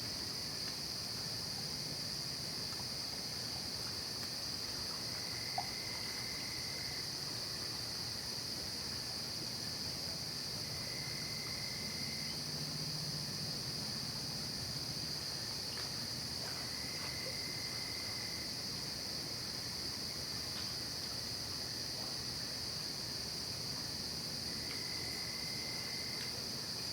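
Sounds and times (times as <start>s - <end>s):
crickets and insects trilling: 0.0s - 26.9s
faint lower insect trill: 0.0s - 26.9s.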